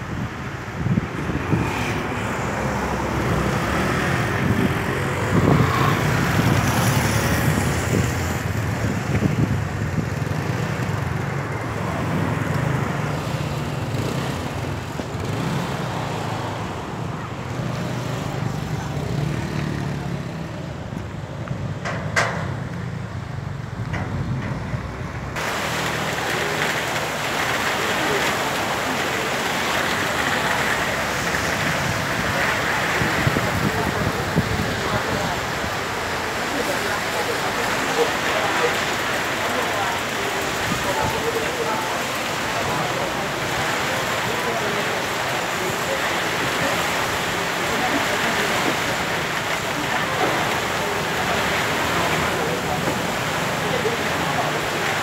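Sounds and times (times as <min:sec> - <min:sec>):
wind buffeting microphone: 0:00.0 - 0:10.8, 0:31.4 - 0:35.8
strong gusty wind: 0:00.0 - 0:17.4, 0:28.4 - 0:38.2.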